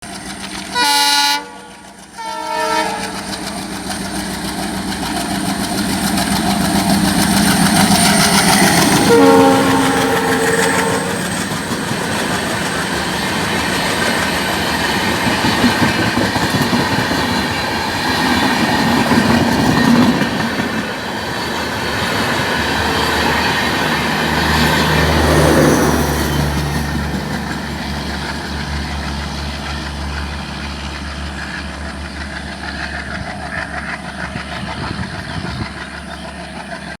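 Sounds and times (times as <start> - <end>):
locomotive air horn blasts: 0.7 - 3.4, 8.9 - 11.4
wheels clattering over rail joints: 3.1 - 37.0.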